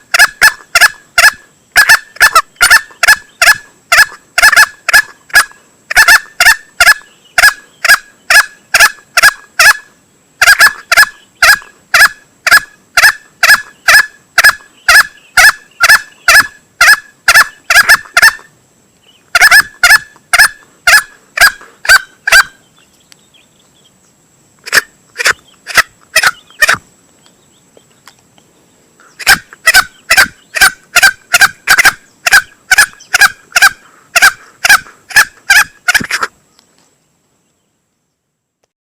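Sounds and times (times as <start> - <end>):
rapid sharp clucking calls: 0.0 - 18.5, 19.3 - 22.7, 24.6 - 26.9, 29.0 - 36.4.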